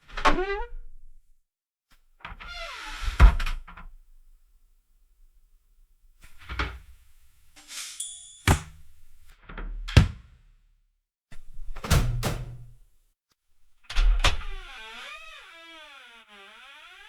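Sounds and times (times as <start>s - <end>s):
metallic latch clunk: 11.8s - 12.8s
door squeak: 13.9s - 17.0s
sterilizer door hiss: 14.2s - 17.0s.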